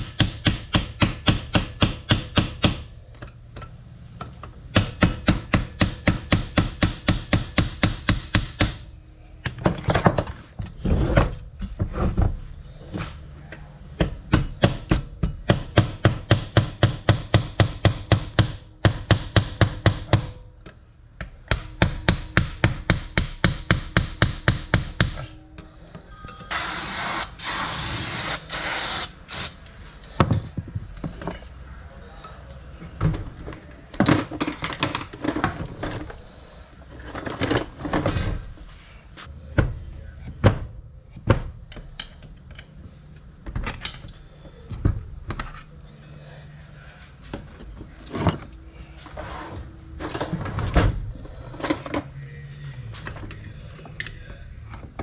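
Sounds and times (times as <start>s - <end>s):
knocks and clicks of metal parts: 0.0s - 8.8s, 13.9s - 25.2s, 39.6s - 45.7s
loud hiss: 26.5s - 29.6s.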